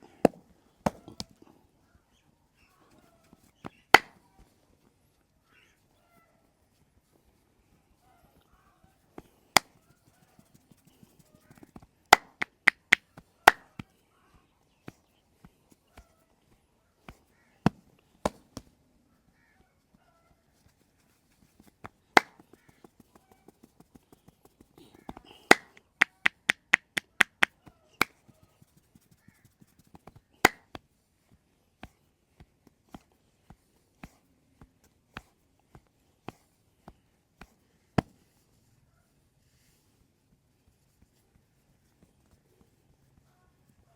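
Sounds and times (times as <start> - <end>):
hand slaps on body: 0.2 - 1.4, 3.6 - 4.3, 9.2 - 13.9, 17.1 - 18.7, 21.6 - 30.8
sharp pops: 3.9 - 4.2, 10.4 - 13.8, 23.7 - 28.2, 28.8 - 30.8.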